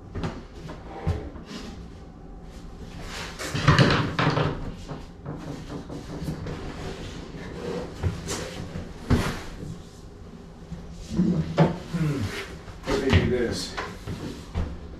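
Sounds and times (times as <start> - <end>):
wooden cabinet knocks and scrapes: 3.4 - 9.6.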